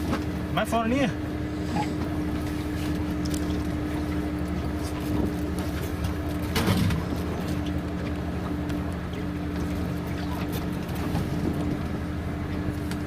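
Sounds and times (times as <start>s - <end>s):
electric boat motor humming: 0.0s - 13.0s
water noise: 0.0s - 13.0s.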